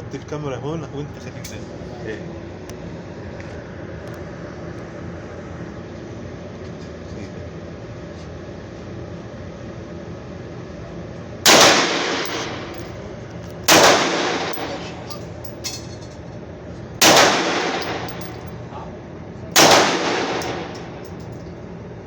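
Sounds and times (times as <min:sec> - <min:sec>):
pistol shots with echo: 0:11.5 - 0:12.8, 0:13.7 - 0:14.9, 0:17.0 - 0:18.3, 0:19.6 - 0:21.1.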